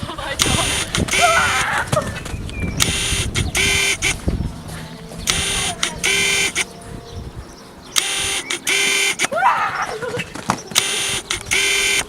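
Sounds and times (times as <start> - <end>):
car horn double beeps: 2.8 - 4.2, 5.3 - 6.7, 8.0 - 9.3, 10.8 - 12.0.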